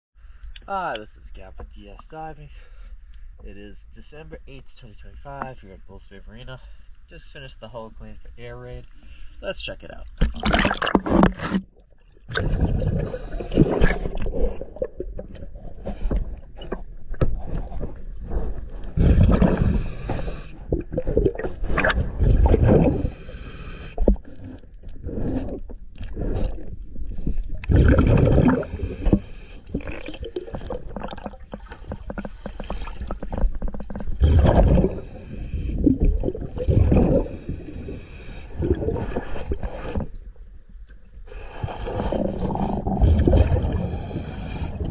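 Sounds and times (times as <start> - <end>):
gurgling exhaled bubbles: 10.2 - 11.6, 12.2 - 40.2, 41.3 - 44.9
diver breathing through regulator: 12.9 - 14.1, 17.4 - 20.8, 22.8 - 29.9, 34.2 - 36.1, 36.8 - 40.2, 41.3 - 44.9.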